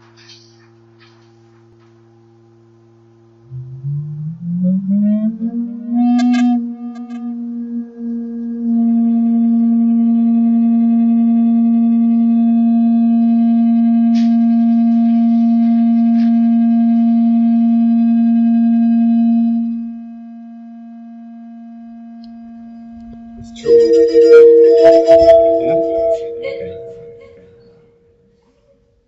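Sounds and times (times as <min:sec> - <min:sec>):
steady electronic tone: 0:03.4 - 0:19.7, 0:23.3 - 0:28.1
rising tone sweep: 0:03.5 - 0:08.7, 0:23.5 - 0:27.8.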